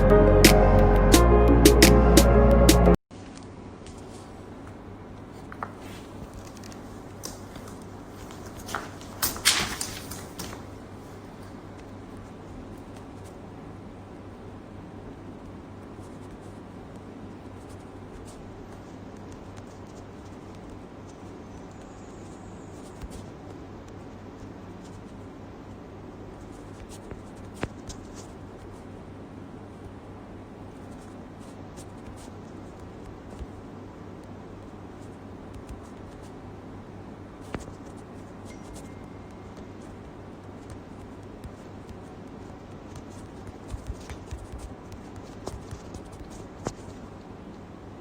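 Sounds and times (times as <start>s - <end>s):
soft rustles: 3.9s - 13.3s, 37.3s - 47.7s.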